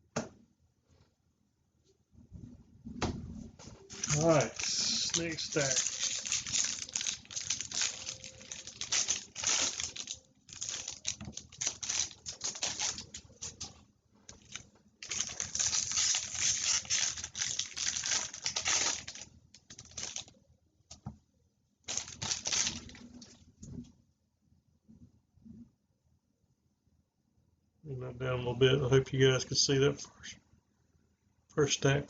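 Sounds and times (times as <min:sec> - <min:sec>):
foil wrappers ripping and crinkling: 0:03.9 - 0:20.3, 0:21.9 - 0:23.1.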